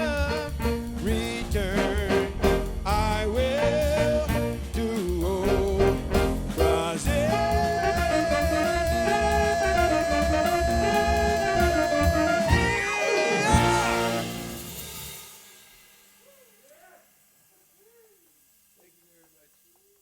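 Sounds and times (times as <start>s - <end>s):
live jazz band playing: 0.0s - 15.6s
long held note: 7.8s - 14.9s.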